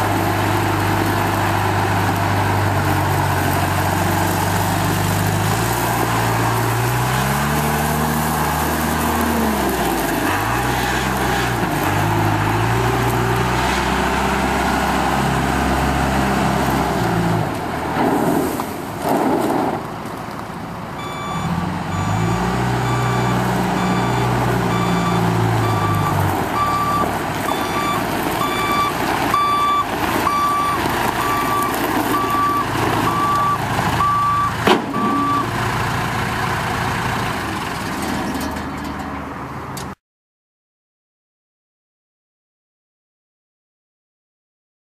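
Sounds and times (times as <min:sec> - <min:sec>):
diesel engine revving: 0:00.0 - 0:39.9
reversing alarm beeping: 0:21.0 - 0:35.5.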